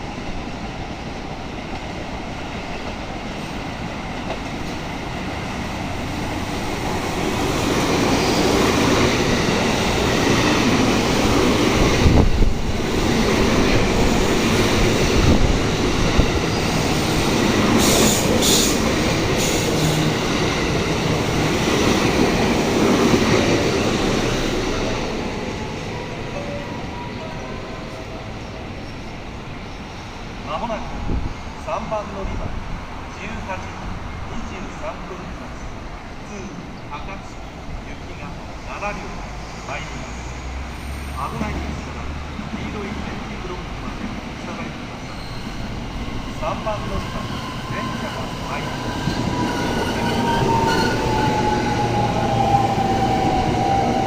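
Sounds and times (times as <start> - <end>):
electric train passing: 0.0 - 54.0
high wheel squeal: 8.0 - 8.8, 39.4 - 41.8, 45.0 - 54.0.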